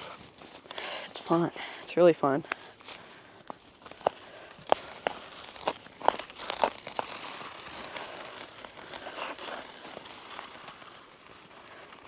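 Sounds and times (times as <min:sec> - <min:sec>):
skates scraping through snow: 0:00.0 - 0:12.0
skate blade clicks: 0:03.4 - 0:12.0.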